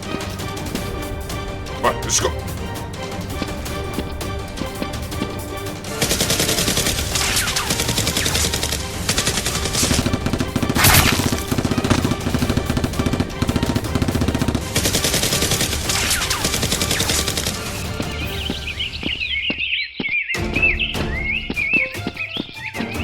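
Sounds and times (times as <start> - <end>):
background music: 0.0 - 23.0
automatic gunfire: 6.0 - 17.8.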